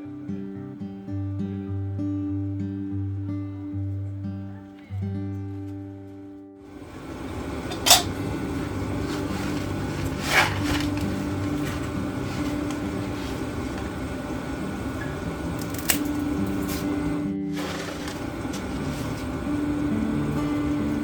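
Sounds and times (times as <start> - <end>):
low motor hum: 6.7 - 21.0.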